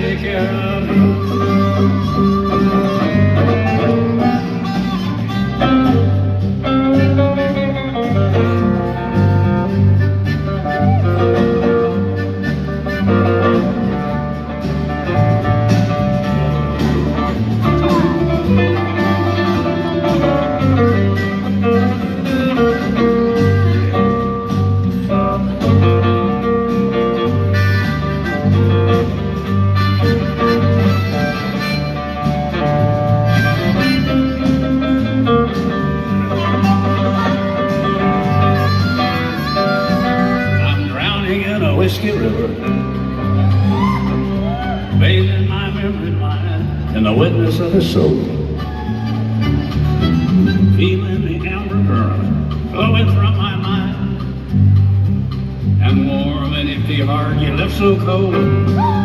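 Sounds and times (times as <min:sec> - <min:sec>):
country band playing: 0:00.0 - 0:59.0
lead guitar: 0:00.0 - 0:59.0
pulsing bass line: 0:00.0 - 0:59.0.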